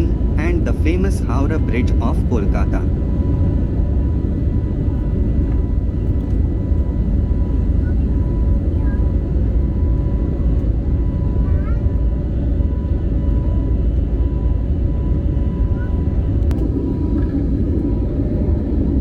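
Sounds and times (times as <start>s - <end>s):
engine and airflow rumble: 0.0s - 19.0s
thin steady hums: 16.4s - 19.0s.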